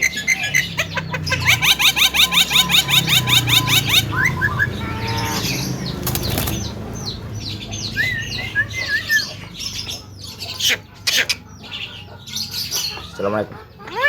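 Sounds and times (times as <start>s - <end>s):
bird chirping: 0.0s - 14.0s
bird whistle: 1.3s - 5.6s
wings flapping: 5.9s - 6.9s.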